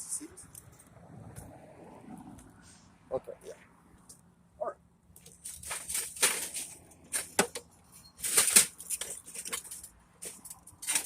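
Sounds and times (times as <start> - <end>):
hands rustling and scraping parts: 5.1 - 11.0.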